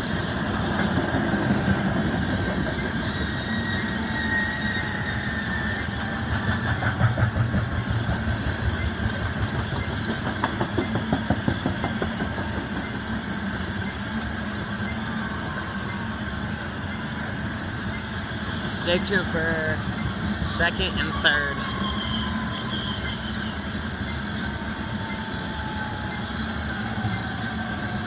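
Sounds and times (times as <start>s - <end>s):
train wheels rumbling on rail: 0.0s - 28.0s
high squeal from wheels: 1.7s - 7.3s, 17.8s - 28.0s
wheels clacking over rail joints: 6.4s - 13.1s.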